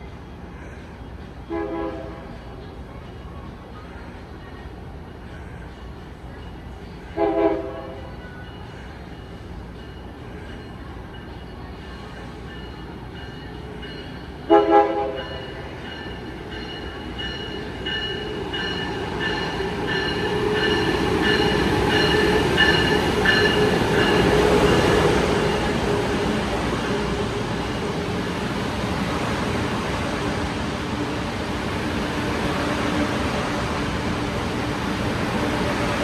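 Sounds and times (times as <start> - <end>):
train rumble and wheel noise: 0.0 - 36.0
train horn toots: 1.5 - 2.4, 7.2 - 8.1, 14.4 - 15.5
locomotive bell ringing: 8.0 - 30.5.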